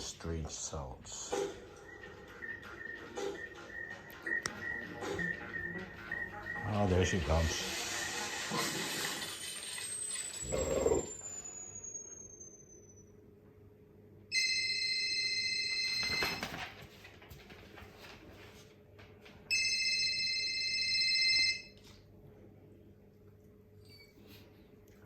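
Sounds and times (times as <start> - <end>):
electronic telephone ringing: 14.3 - 16.4, 19.5 - 21.8.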